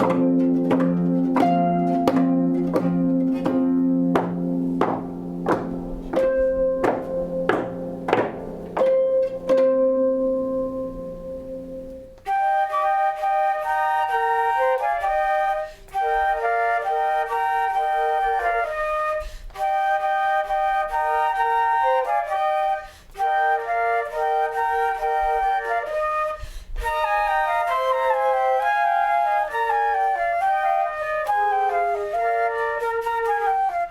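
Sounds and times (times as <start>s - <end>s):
plucked chords: 0.0s - 12.7s
flute melody: 0.0s - 33.9s.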